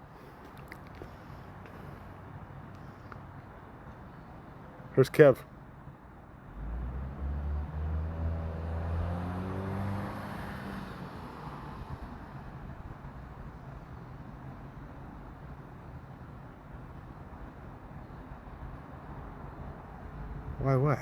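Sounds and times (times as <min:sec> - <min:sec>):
distant traffic hum: 0:00.0 - 0:21.0
vehicle engine accelerating: 0:06.5 - 0:12.0.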